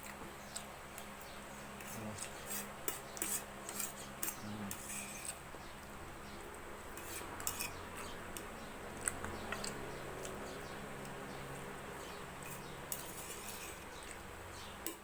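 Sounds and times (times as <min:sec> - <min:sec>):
cutlery scraping a plate: 0:01.8 - 0:05.4, 0:06.9 - 0:08.1, 0:12.4 - 0:14.2.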